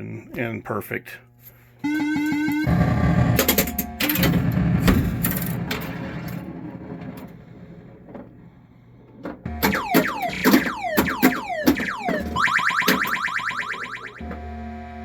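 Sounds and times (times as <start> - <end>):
noisy electronic sound: 9.5 - 14.9
falling-pitch electronic sweeps: 9.6 - 14.4
short rising electronic sweeps: 9.7 - 14.3.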